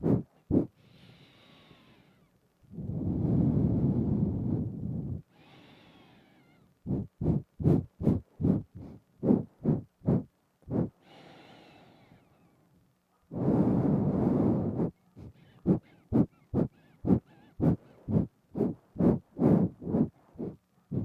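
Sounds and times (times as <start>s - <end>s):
loud breath out through nose: 0.0s - 2.2s, 2.8s - 12.3s, 13.3s - 21.0s
short nasal puffs: 0.0s - 2.2s, 3.1s - 12.2s, 13.3s - 21.0s
breath in through nose: 5.4s - 6.4s, 8.8s - 12.2s.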